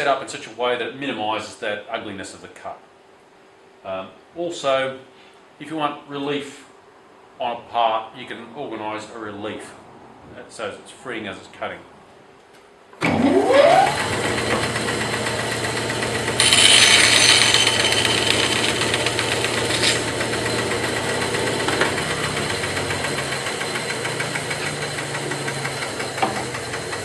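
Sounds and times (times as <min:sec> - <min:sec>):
bandsaw motor humming: 0:13.0 - 0:27.0.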